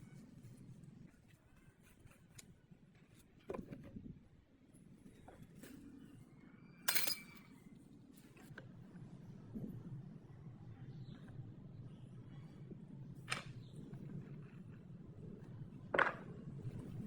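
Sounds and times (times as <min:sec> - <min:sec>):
sharp clink with ring: 0:06.9 - 0:07.4.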